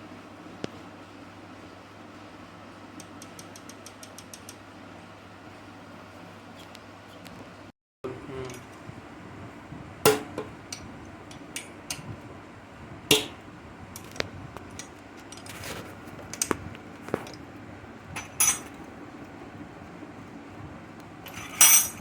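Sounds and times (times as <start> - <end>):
hand tools clinking on metal: 18.2 - 18.7, 21.3 - 22.0.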